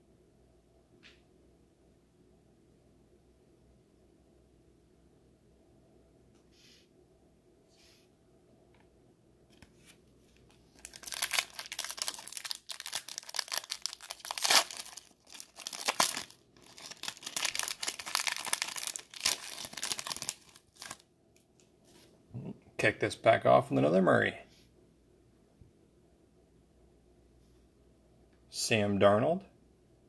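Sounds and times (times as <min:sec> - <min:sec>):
foil wrapper tearing and crinkling: 0:10.5 - 0:21.0.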